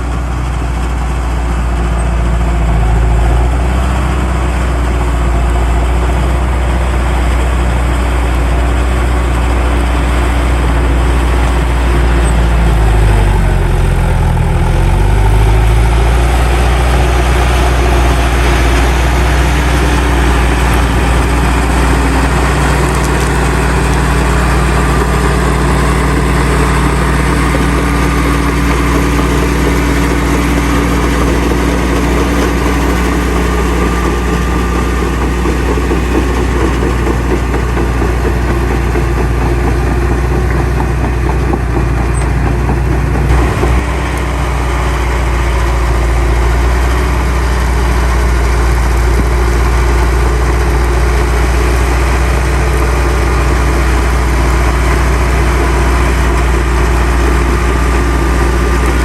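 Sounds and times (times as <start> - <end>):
diesel engine droning: 0.0 - 59.0.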